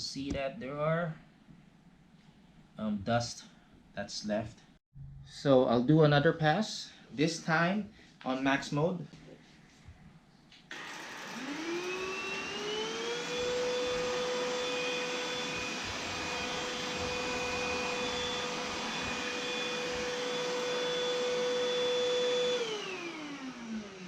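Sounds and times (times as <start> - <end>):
vacuum cleaner motor whine: 10.7 - 24.0.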